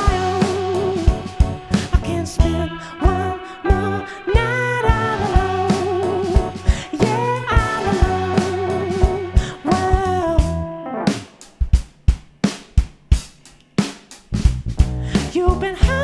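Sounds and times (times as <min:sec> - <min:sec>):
live band playing soul: 0:00.0 - 0:11.6
drum kit playing alone: 0:00.0 - 0:16.0.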